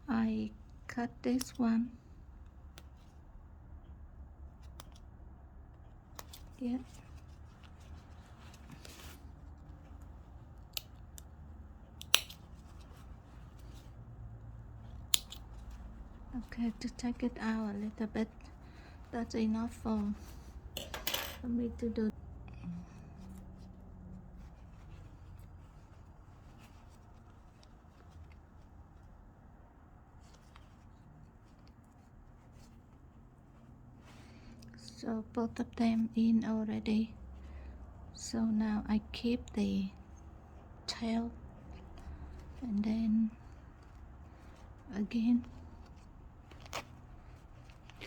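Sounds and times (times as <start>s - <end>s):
low room hum: 0.0s - 48.0s
fabric rustle: 5.9s - 20.8s, 23.0s - 48.0s
trouser zip clicking: 12.0s - 12.8s, 15.0s - 15.7s.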